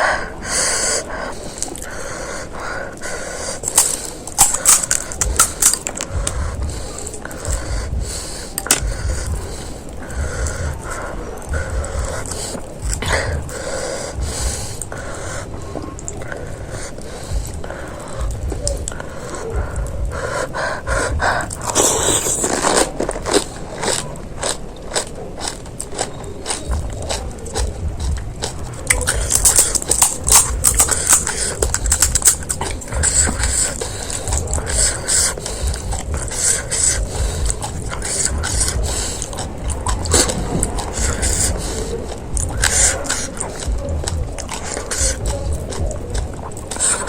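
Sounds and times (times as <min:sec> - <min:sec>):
person chewing: 0:00.0 - 0:47.0
crisp shells crunching: 0:03.2 - 0:07.7, 0:08.5 - 0:09.4, 0:21.4 - 0:47.0
low steady rumble: 0:03.7 - 0:47.0.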